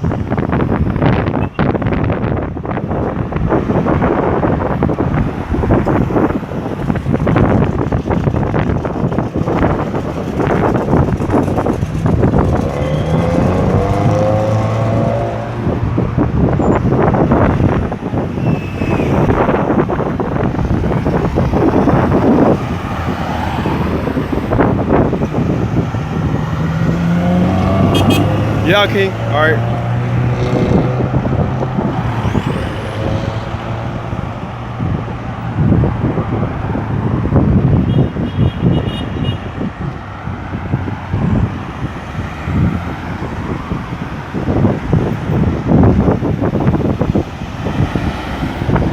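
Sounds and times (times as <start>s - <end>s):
road traffic: 0.0s - 48.9s
wind buffeting microphone: 0.0s - 48.9s.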